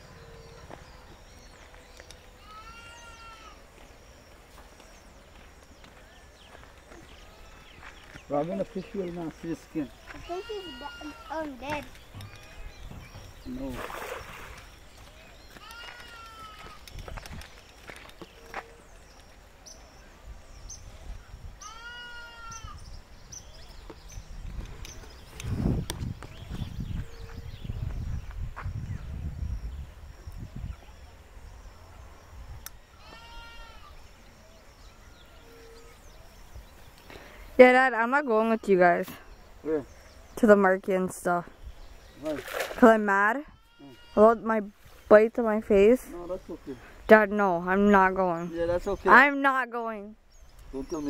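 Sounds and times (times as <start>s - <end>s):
outdoor background noise: 0.0s - 51.0s
farm animal bleating: 2.4s - 3.6s, 7.0s - 7.9s, 10.0s - 11.5s, 15.6s - 16.8s, 21.6s - 22.8s, 32.9s - 34.1s, 43.5s - 44.7s
drawn-out animal call: 10.1s - 13.0s.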